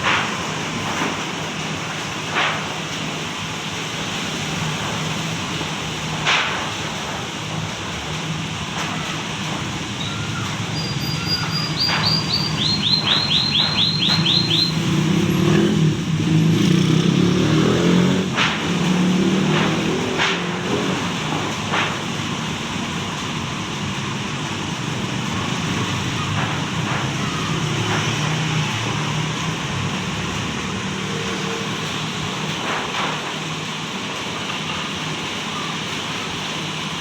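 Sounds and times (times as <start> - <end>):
vehicle engines passing: 7.0 - 34.7.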